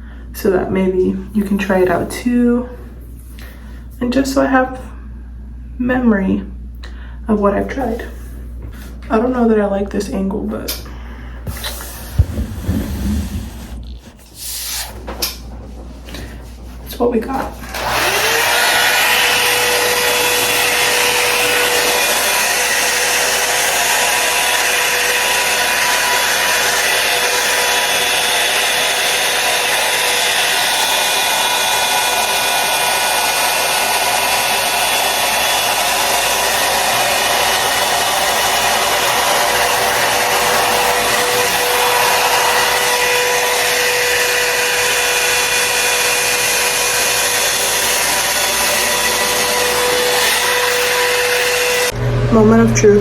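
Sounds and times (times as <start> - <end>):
blow dryer whining: 10.7 - 53.0.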